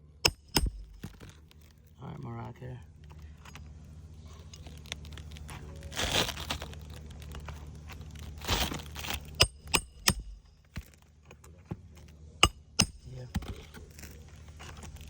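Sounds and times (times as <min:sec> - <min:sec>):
steady low hum: 0:00.0 - 0:15.0
hammer striking nails: 0:00.2 - 0:01.3, 0:09.4 - 0:10.8, 0:12.4 - 0:13.7
shingle rustling scrapes: 0:02.9 - 0:09.5, 0:13.1 - 0:15.0.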